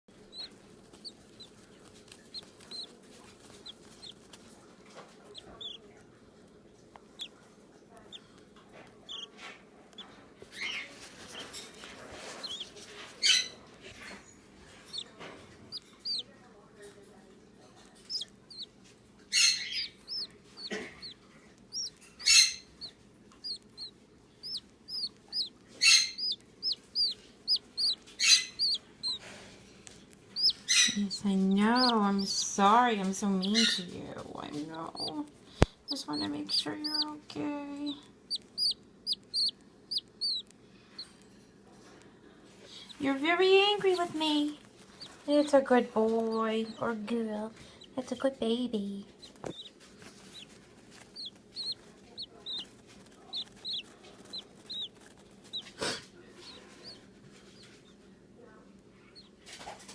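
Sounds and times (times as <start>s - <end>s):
bird chick peeping: 0.1s - 6.2s, 6.9s - 17.0s, 17.7s - 41.3s, 42.6s - 58.0s, 58.9s - 59.9s
bird chick cheeping: 0.3s - 1.5s, 2.2s - 4.2s, 12.4s - 13.5s, 15.7s - 16.3s, 19.4s - 29.2s, 30.4s - 32.4s, 37.9s - 41.1s, 49.2s - 49.7s, 51.1s - 55.7s.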